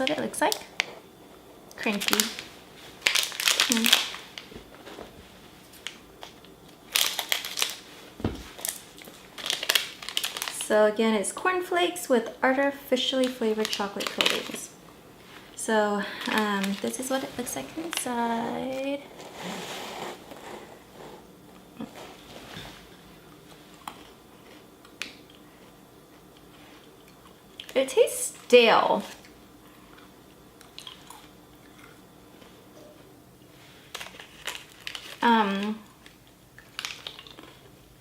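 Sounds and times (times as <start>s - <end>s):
plastic candy bag crinkling: 1.7s - 4.5s, 5.6s - 10.8s, 13.0s - 19.3s, 33.8s - 37.8s.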